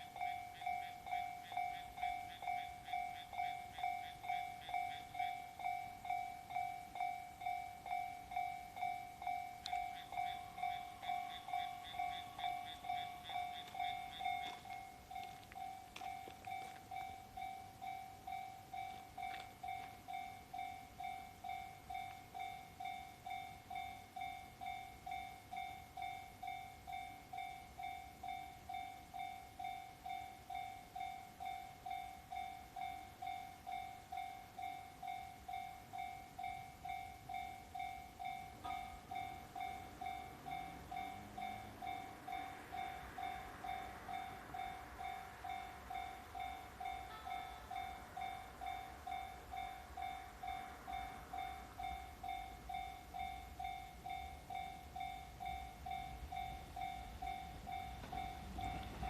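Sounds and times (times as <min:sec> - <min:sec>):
electric train rumble: 0:00.0 - 0:59.0
level crossing warning bell: 0:00.0 - 0:59.0
train motor whine: 0:55.8 - 0:59.0.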